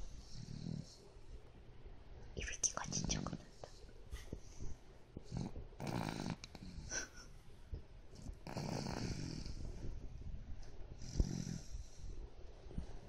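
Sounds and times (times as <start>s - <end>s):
person snoring: 8.4s - 9.7s.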